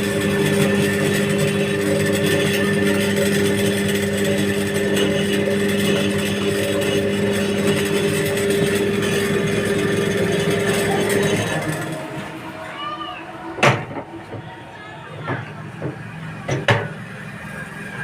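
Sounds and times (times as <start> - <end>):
electric motor humming: 0.0 - 14.4.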